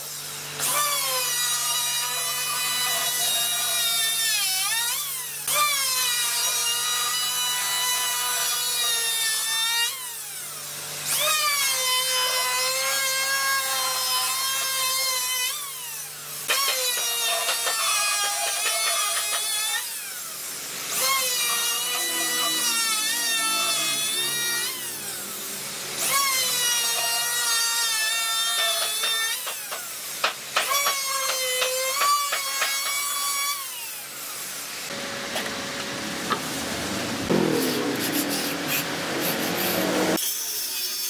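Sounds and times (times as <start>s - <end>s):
power tool motor whining: 0.2s - 34.3s
rough rubbing sound: 37.3s - 40.2s.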